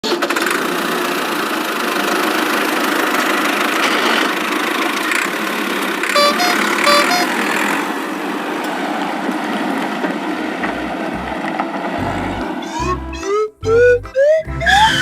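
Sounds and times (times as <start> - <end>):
vehicle engine running: 0.7 - 8.2, 10.5 - 14.9
two-note horn beep: 6.2 - 7.4, 12.0 - 15.0.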